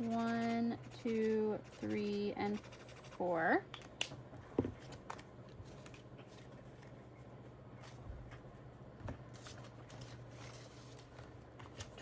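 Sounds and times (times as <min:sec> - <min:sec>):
low room hum: 0:00.0 - 0:12.0
paper and cash rustling: 0:09.4 - 0:12.0.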